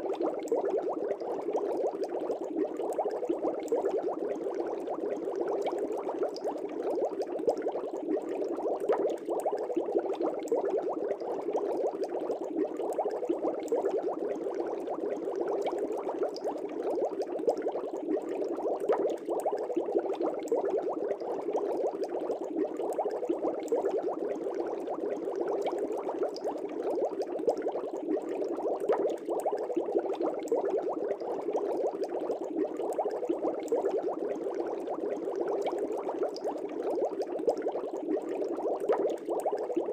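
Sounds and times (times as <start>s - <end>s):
aquarium air bubbling: 0.0s - 39.9s.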